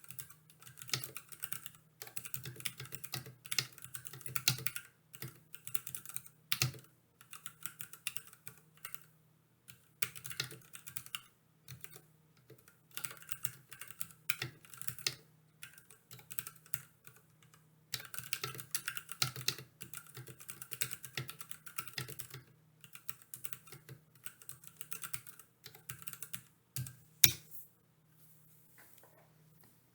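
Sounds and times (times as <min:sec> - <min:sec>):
mechanical keyboard typing: 0:00.0 - 0:09.0, 0:10.0 - 0:12.0, 0:18.0 - 0:26.9.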